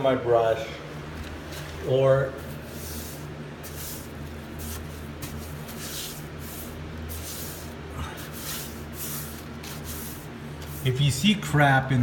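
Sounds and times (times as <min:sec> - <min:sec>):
steady low hum: 0:00.0 - 0:12.0
paintbrush swishing on wood: 0:02.4 - 0:11.0.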